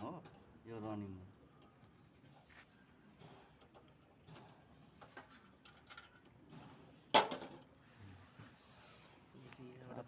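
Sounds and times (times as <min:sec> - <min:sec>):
tools and parts handling clicks: 0:03.2 - 0:07.7.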